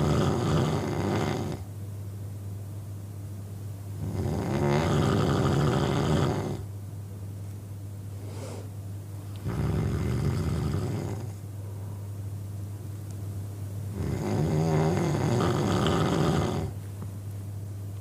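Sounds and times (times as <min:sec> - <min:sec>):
man snoring: 0:00.0 - 0:01.7, 0:04.0 - 0:06.7, 0:09.4 - 0:11.4, 0:13.9 - 0:16.8
quiet breathing: 0:08.1 - 0:08.8, 0:10.3 - 0:12.3.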